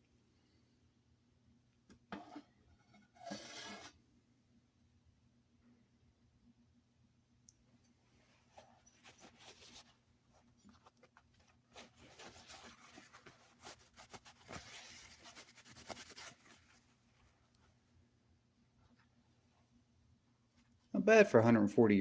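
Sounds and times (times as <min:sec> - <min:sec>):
faint scratching and rubbing: 0:02.2 - 0:04.0, 0:08.0 - 0:17.8.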